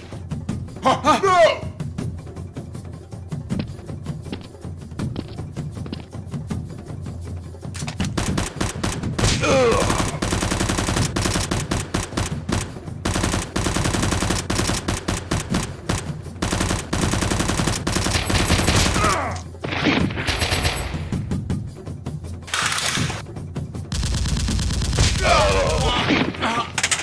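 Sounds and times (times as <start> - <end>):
rapid automatic gunfire: 8.2 - 19.0, 22.5 - 23.2, 23.9 - 25.8.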